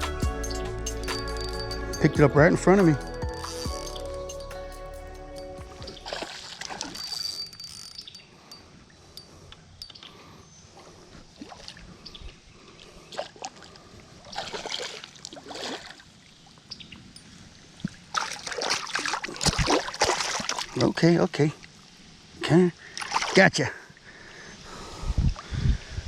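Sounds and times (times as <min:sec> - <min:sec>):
running water: 0:01.1 - 0:10.0, 0:13.2 - 0:24.3
fish splashing at surface: 0:06.0 - 0:07.2.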